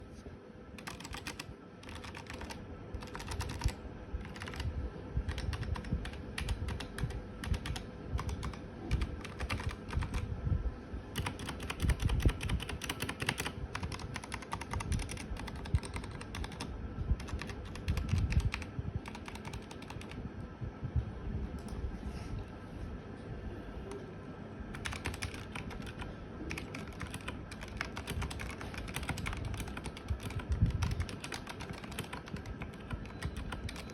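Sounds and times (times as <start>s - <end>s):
mechanical keyboard keystroke clicks: 0.8s - 4.6s, 5.3s - 10.2s, 24.8s - 33.9s.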